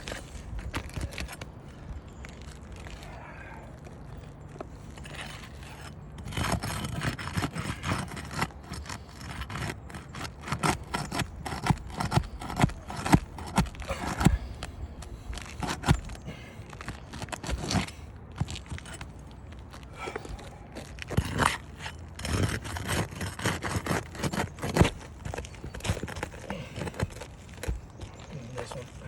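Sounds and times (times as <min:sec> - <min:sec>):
roof shingles scraping and cracking: 0:03.8 - 0:29.0.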